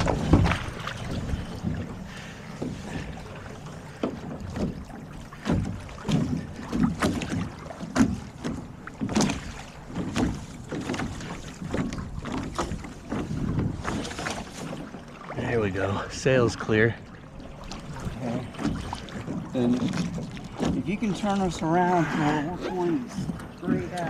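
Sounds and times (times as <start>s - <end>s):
wind rumbling on microphone: 0.0s - 3.4s
water splashes and knocks: 0.0s - 24.0s.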